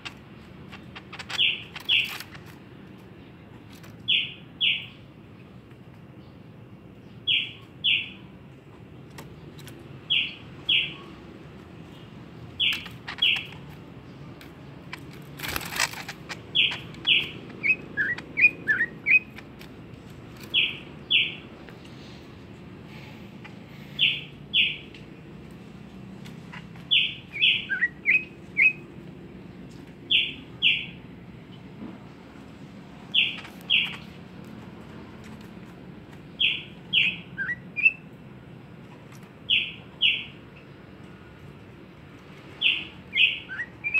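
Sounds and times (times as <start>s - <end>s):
songbird chirping: 0.0s - 43.9s
rustle: 14.9s - 17.4s.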